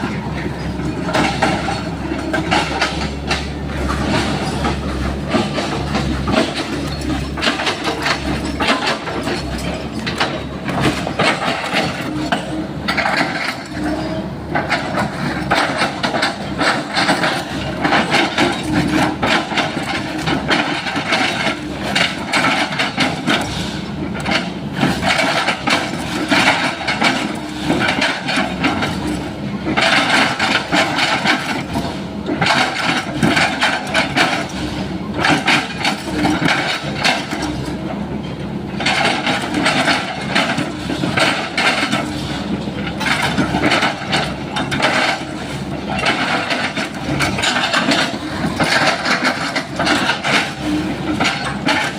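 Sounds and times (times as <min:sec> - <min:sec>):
excavator engine humming: 0:00.0 - 0:51.9.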